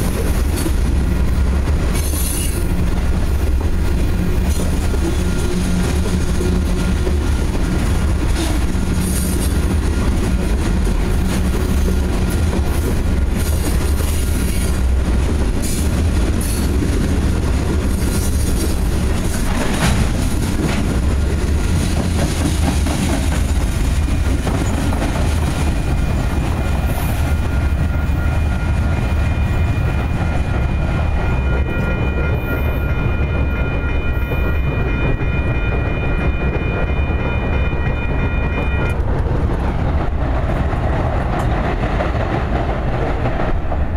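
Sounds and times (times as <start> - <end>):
freight train rolling past: 0.0 - 43.9
high-pitched ringing: 27.3 - 39.0.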